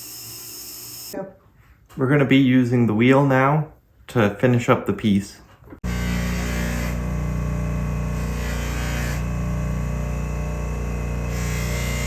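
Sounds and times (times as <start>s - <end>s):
polishing motor humming and whirring: 5.8s - 12.0s.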